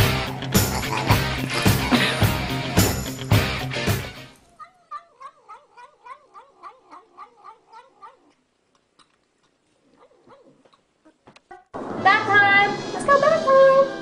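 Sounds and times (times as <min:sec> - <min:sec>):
rock music: 0:00.0 - 0:04.4
cat yowling: 0:04.5 - 0:08.4.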